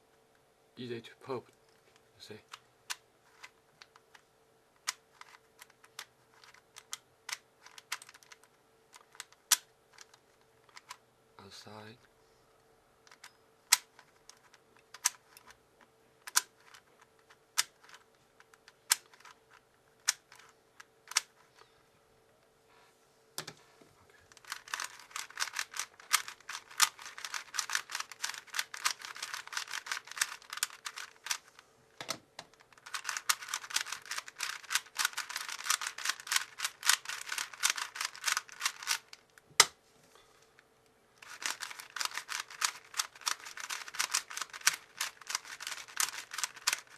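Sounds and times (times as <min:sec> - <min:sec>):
speedcube clicking: 0:04.8 - 0:11.0, 0:13.1 - 0:15.6, 0:16.2 - 0:21.4, 0:24.3 - 0:31.4, 0:32.4 - 0:39.2, 0:41.2 - 0:46.9.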